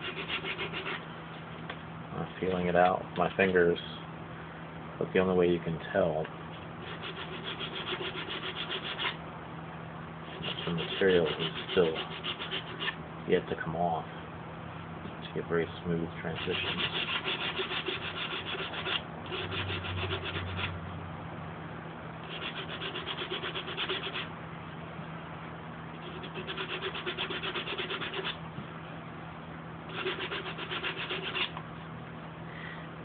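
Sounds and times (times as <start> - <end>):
sandpaper rubbing on filler: 0.0 - 1.0, 6.8 - 9.2, 10.3 - 13.0, 16.3 - 20.7, 22.2 - 24.3, 26.0 - 28.4, 29.9 - 31.5.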